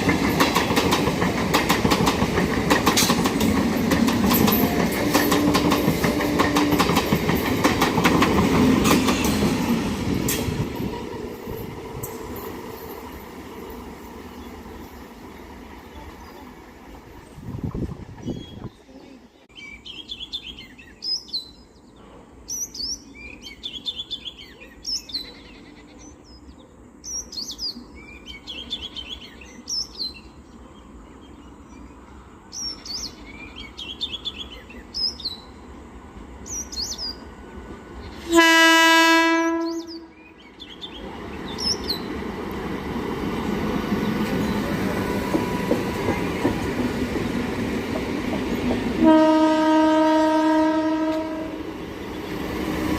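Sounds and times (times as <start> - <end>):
approaching train rumble: 0.0 - 52.9
birds chirping: 0.1 - 38.4, 39.6 - 49.4, 50.0 - 52.9
train horn blast: 38.2 - 40.2, 49.0 - 51.8.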